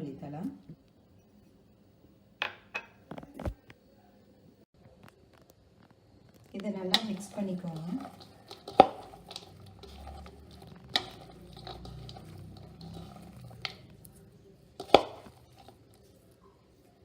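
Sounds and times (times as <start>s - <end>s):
rustling and squishing vegetables: 3.1s - 3.8s, 4.8s - 17.0s.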